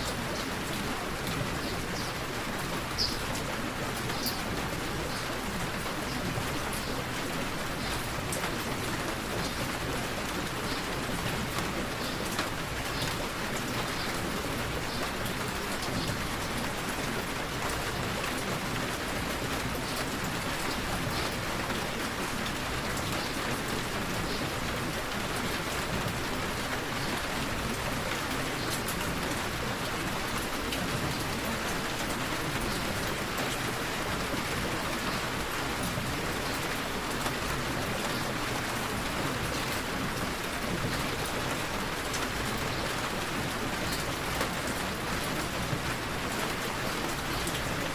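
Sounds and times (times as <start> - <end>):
steady rain falling: 0.0 - 47.9.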